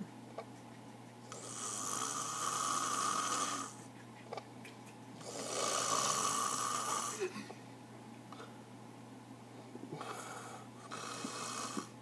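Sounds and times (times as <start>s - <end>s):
man snoring: 1.3s - 3.8s, 5.2s - 7.3s, 9.9s - 12.0s.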